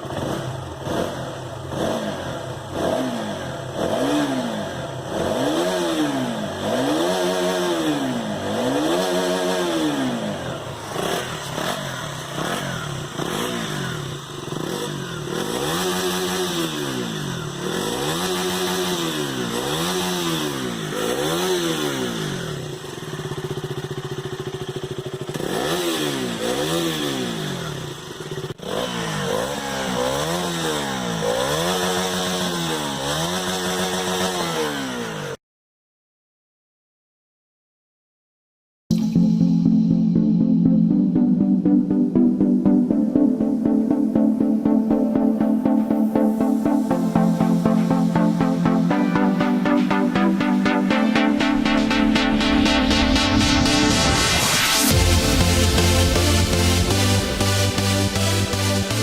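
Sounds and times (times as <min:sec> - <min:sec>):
motorcycle engine revving: 0:00.0 - 0:35.4, 0:38.9 - 0:59.0
motorcycle engine idling: 0:10.1 - 0:28.6.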